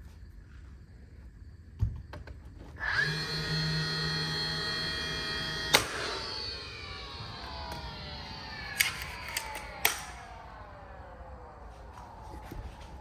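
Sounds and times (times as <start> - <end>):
power tool motor winding down: 2.8 - 13.0
sharp clicks: 5.5 - 13.0.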